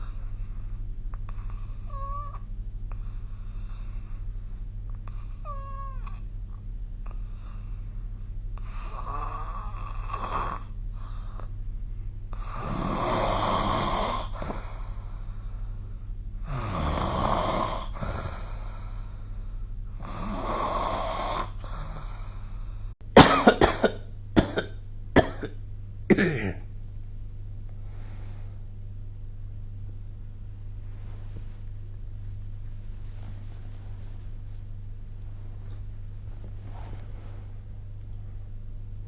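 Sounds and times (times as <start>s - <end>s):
steady low hum: 0.0s - 39.0s
person snoring: 12.4s - 15.0s, 16.4s - 19.0s, 20.0s - 22.4s.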